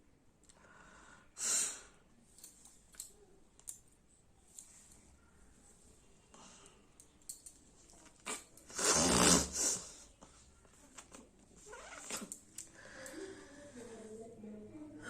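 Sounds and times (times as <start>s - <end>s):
small clicks and rustles: 2.3s - 5.8s, 6.6s - 8.7s, 10.2s - 13.2s
person blowing nose: 8.2s - 10.0s.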